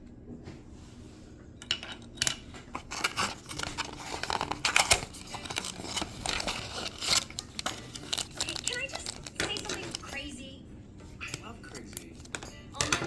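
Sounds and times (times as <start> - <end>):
packaging crinkling: 2.7 - 10.1.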